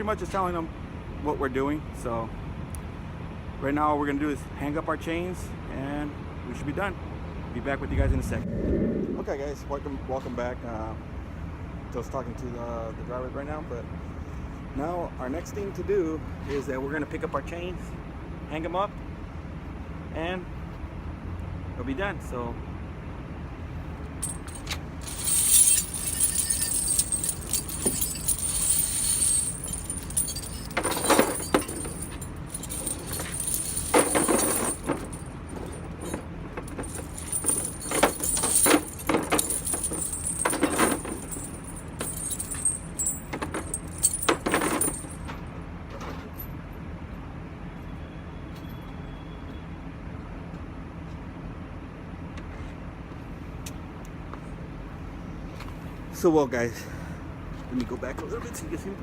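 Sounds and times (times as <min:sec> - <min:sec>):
heavy chain clanks: 0:24.2 - 0:45.3
tire chains jingling and rattling: 0:24.2 - 0:45.3.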